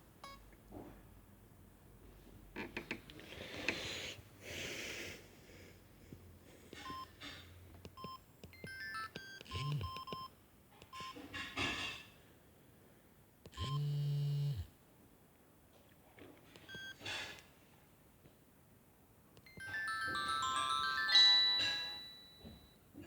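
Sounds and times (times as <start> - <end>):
mobile phone beeps: 6.8 - 7.2, 8.0 - 10.3, 16.7 - 17.0.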